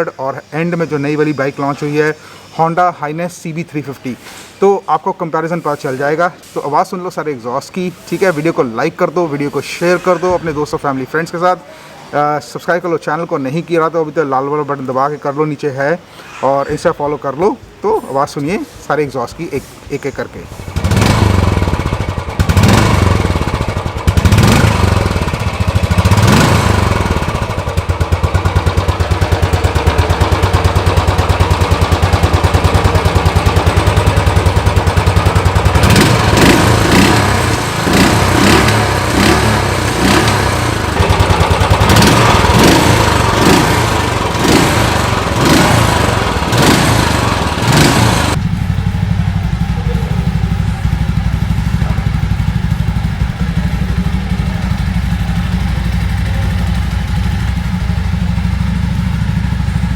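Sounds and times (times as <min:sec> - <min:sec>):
another motorcycle idling: 0:20.6 - 0:59.9
motorcycle engine idling and revving: 0:20.6 - 0:59.9.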